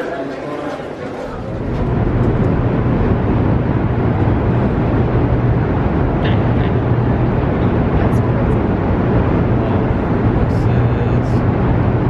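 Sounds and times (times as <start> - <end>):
deep hum: 1.3 - 12.0
low rumble in a tunnel: 1.3 - 12.0.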